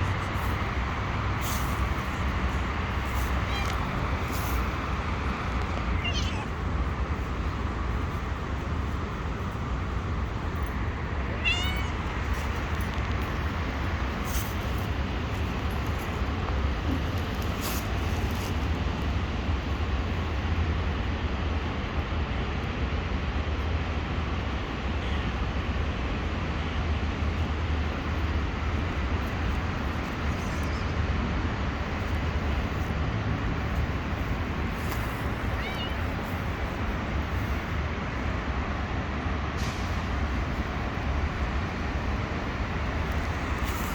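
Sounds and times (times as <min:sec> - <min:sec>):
steady low rumble: 0:00.0 - 0:43.9
cat meowing: 0:03.0 - 0:04.6, 0:05.7 - 0:06.6, 0:11.3 - 0:12.2, 0:35.4 - 0:36.4.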